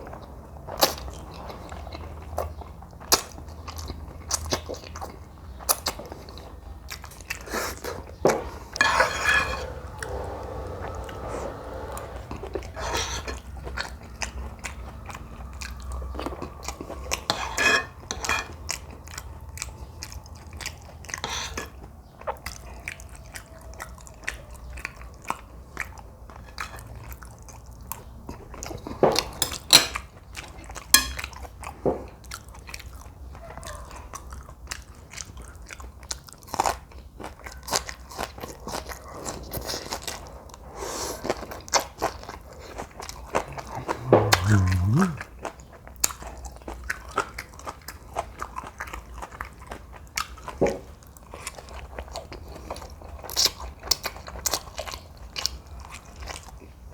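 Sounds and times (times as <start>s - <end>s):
slurping noodles: 8.8s - 13.3s, 43.6s - 45.2s.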